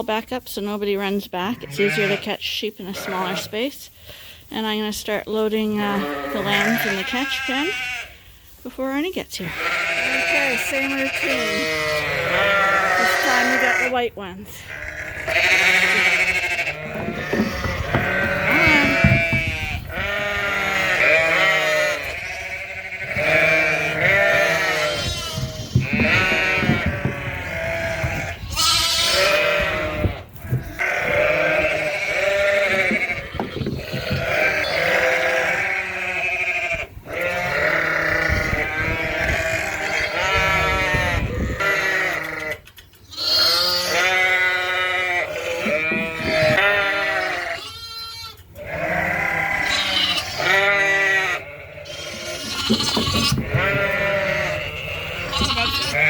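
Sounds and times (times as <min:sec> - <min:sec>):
sheep bleating: 0:01.5 - 0:03.6, 0:05.9 - 0:08.1, 0:09.4 - 0:14.0, 0:14.6 - 0:56.0
low rumble of movement: 0:14.7 - 0:21.0, 0:22.7 - 0:31.5.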